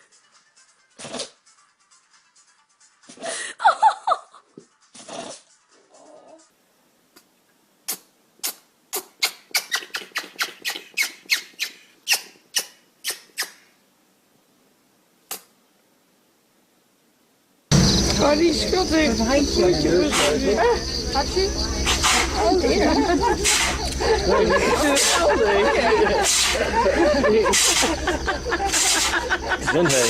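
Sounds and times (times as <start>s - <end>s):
animal sneezing: 1.0s - 1.4s, 4.9s - 5.5s, 7.9s - 10.9s, 21.8s - 22.4s, 23.3s - 24.0s, 26.2s - 26.7s, 27.5s - 28.1s, 28.7s - 29.3s
squeaky sounds: 17.7s - 22.6s.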